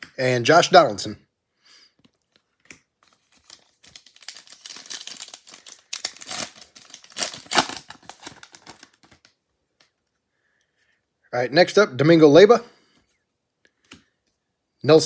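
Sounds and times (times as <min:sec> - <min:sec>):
foil wrapper crinkling and tearing: 0:03.0 - 0:09.3.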